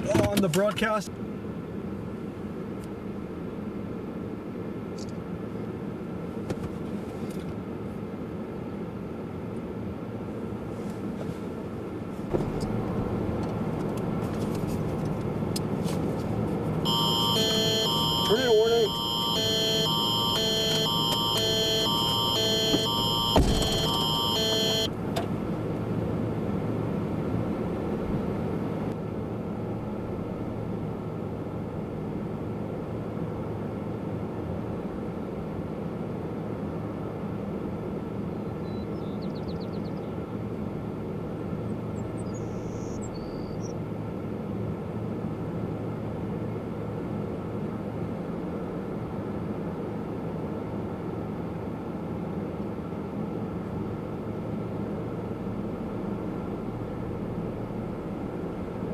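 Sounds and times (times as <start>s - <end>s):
engine and road noise in cabin: 0.0s - 58.9s.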